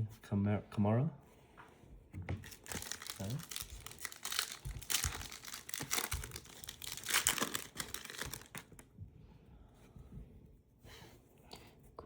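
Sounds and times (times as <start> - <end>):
wrapper crinkling and tearing: 2.4 - 8.9.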